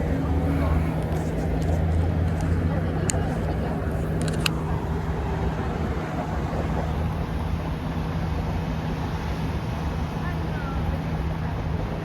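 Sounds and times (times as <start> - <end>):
vehicle mechanical drone: 0.0 - 12.0.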